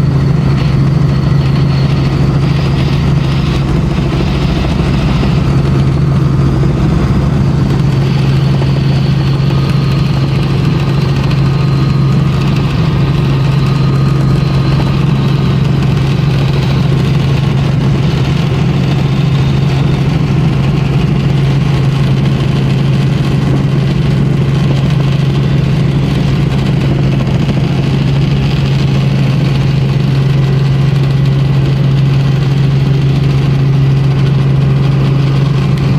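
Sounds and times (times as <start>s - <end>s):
helicopter cabin drone: 0.0s - 35.9s.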